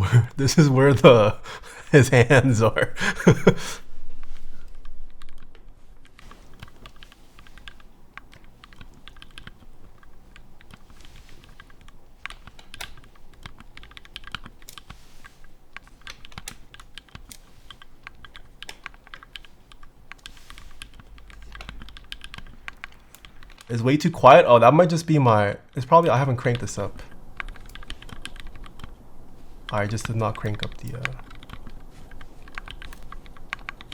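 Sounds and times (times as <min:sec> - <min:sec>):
mechanical keyboard clacking: 0:06.2 - 0:23.7, 0:26.4 - 0:29.0, 0:29.6 - 0:33.9.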